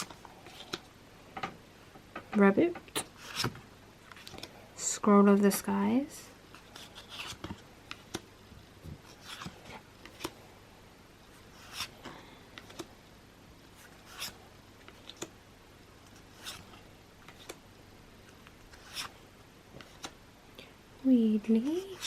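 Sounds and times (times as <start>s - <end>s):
cards sliding papery swish: 3.0s - 3.5s, 9.0s - 10.4s, 11.4s - 12.0s, 13.7s - 15.3s, 16.1s - 17.6s, 18.4s - 19.2s.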